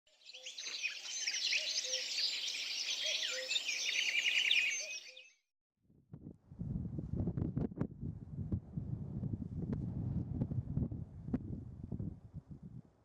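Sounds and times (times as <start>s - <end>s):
birds chirping and singing: 0.2s - 5.3s
wind buffeting microphone: 6.0s - 13.0s.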